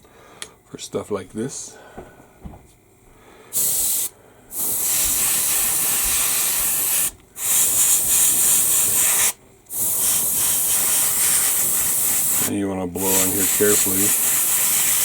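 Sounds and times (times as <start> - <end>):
airbrush air hiss: 3.5 - 15.0.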